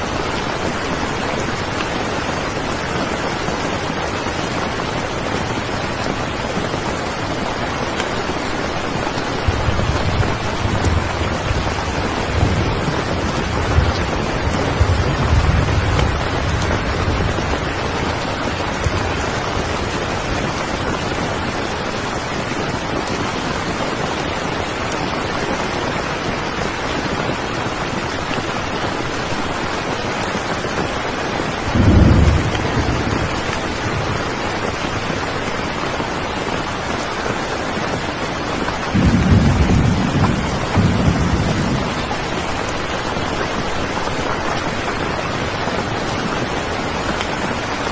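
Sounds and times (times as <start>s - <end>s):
steady rain falling: 0.0s - 47.9s
low thunder rumbles: 7.8s - 22.6s, 31.6s - 35.2s, 38.7s - 46.2s.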